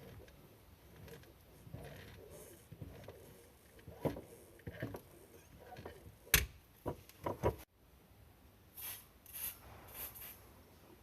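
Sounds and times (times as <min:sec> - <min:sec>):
rubbing or scraping strokes: 0:00.0 - 0:06.3
sharp knocks and clicks: 0:03.8 - 0:07.7.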